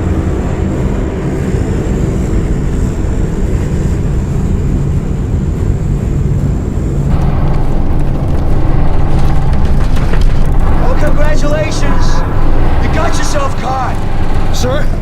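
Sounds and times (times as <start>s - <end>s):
airplane engines droning: 0.0s - 15.0s
thin high whine: 0.0s - 15.0s.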